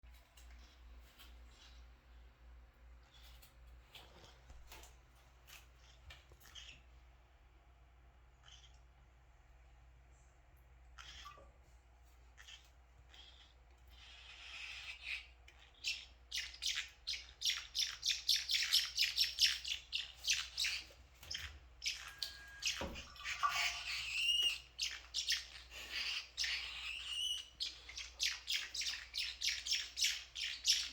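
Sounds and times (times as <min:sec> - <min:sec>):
parrots chirping: 0:11.0 - 0:11.5, 0:12.4 - 0:30.9
warbling bird calls: 0:15.8 - 0:30.9.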